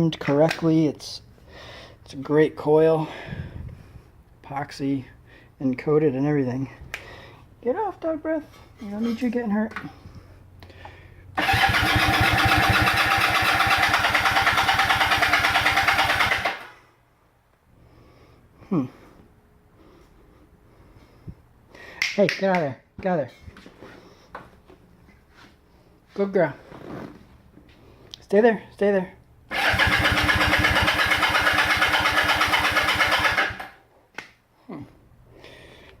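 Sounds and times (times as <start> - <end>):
motorcycle engine starting: 11.4 - 16.8, 29.5 - 33.8.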